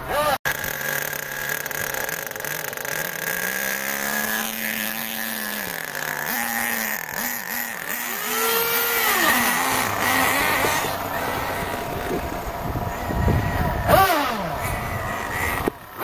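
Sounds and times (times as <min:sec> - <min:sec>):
rc car engine revving: 0:00.0 - 0:16.0.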